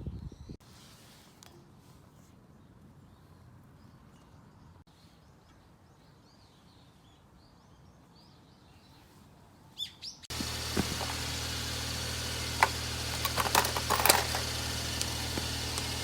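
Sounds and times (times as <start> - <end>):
small birds chirping: 9.8 - 16.0
loud mechanical hum: 10.3 - 16.0.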